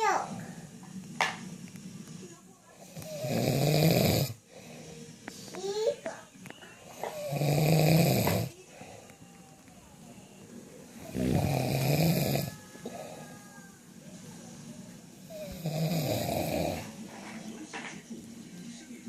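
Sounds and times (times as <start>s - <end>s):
quiet breathing: 0.3s - 17.6s
person snoring: 2.8s - 4.4s, 6.9s - 8.5s, 11.0s - 13.4s, 15.3s - 17.0s.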